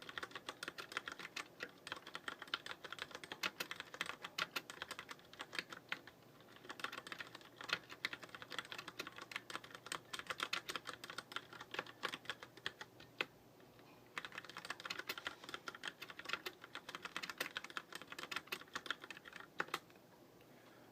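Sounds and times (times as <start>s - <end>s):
mechanical keyboard typing: 0.0s - 13.3s, 14.1s - 19.9s.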